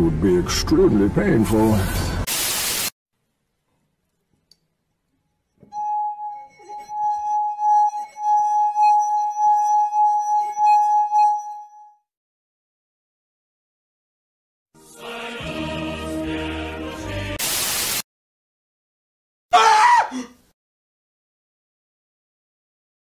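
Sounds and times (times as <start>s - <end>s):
steady ringing tone: 5.6s - 12.0s.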